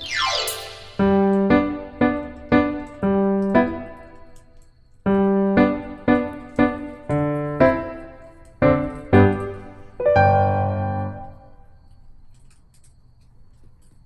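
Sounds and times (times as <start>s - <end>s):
piano single notes: 0.0s - 4.4s, 5.1s - 11.6s.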